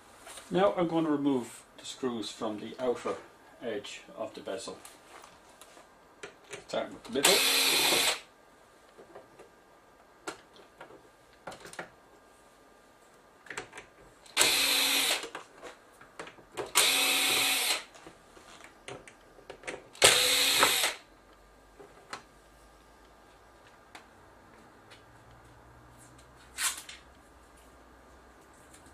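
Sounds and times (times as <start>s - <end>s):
electric screwdriver motor whine: 7.2s - 8.2s, 14.4s - 15.2s, 16.8s - 17.9s, 20.0s - 21.0s.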